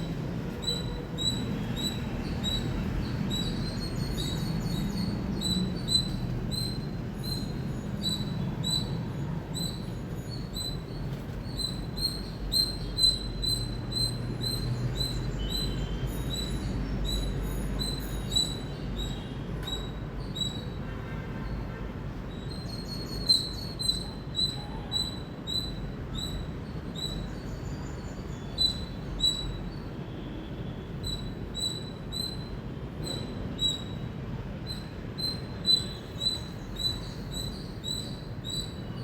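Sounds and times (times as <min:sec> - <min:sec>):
squirrel chirping: 0:00.6 - 0:09.0, 0:09.6 - 0:19.2, 0:34.6 - 0:39.0.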